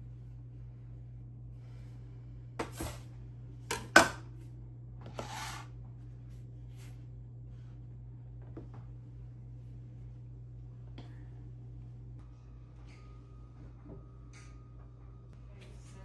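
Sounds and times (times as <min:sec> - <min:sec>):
steady low hum: 0:00.0 - 0:16.0
short scraping sounds: 0:05.2 - 0:05.7.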